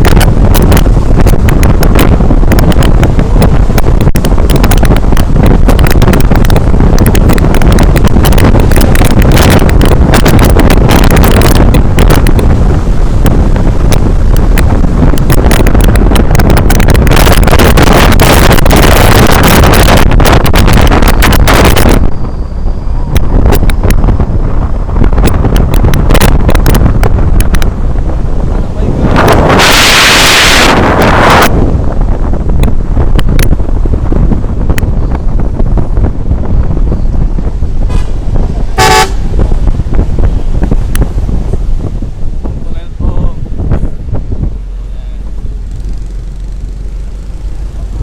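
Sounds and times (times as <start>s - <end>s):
wind buffeting microphone: 0.0s - 48.0s
vehicle horn honking: 37.9s - 39.4s.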